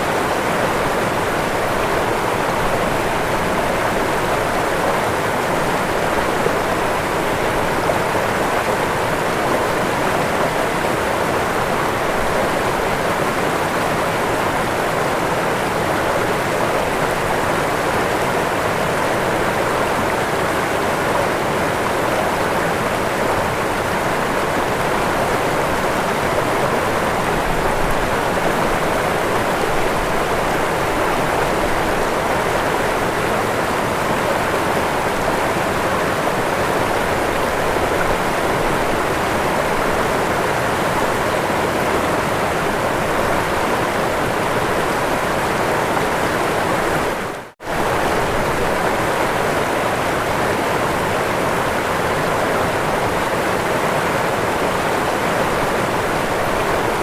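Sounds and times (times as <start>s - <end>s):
waterfall rushing and splashing: 0.0s - 57.0s.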